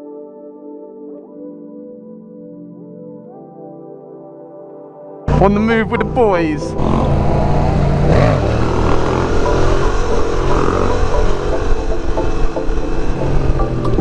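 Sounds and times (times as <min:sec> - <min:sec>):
motorcycle engines revving: 0:05.3 - 0:14.0.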